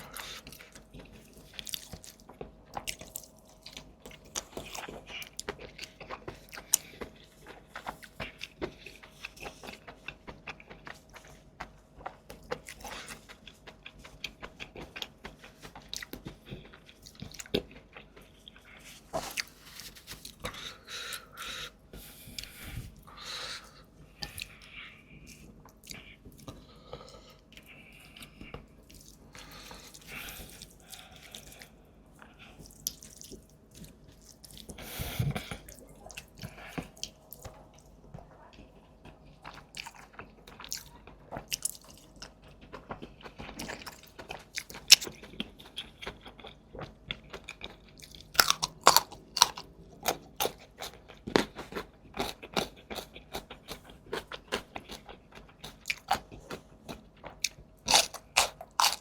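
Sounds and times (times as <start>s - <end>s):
person chewing food: 0.0s - 59.0s
wet mouth clicks and crunches: 43.5s - 46.5s.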